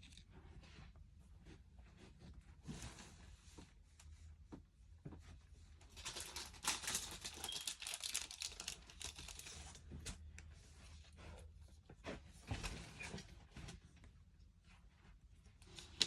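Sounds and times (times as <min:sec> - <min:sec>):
plastic packaging crinkling: 0:06.0 - 0:09.8.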